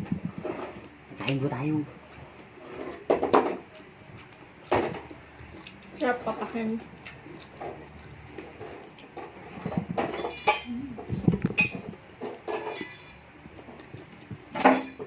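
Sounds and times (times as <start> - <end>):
person chewing food: 0.5 - 6.0, 6.9 - 9.8, 13.5 - 14.5
clinks of dishes or cutlery: 10.0 - 10.8, 12.5 - 13.3, 14.6 - 15.0.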